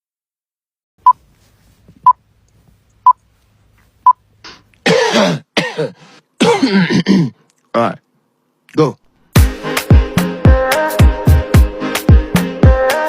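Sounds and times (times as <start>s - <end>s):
harsh coughs: 4.8s - 7.4s.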